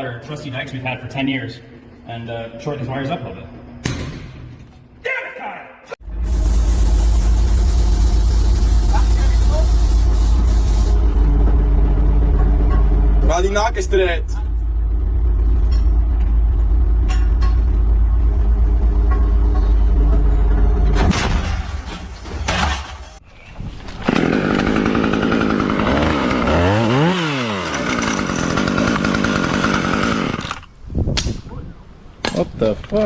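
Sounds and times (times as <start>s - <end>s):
motor running loudly: 24.1s - 30.7s.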